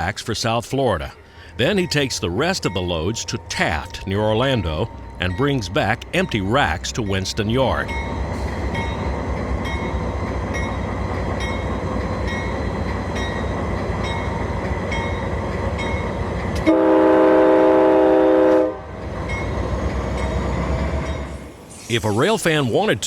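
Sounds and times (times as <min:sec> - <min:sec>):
freight train rumbling past: 0:00.0 - 0:23.0
locomotive air horn: 0:16.6 - 0:19.0.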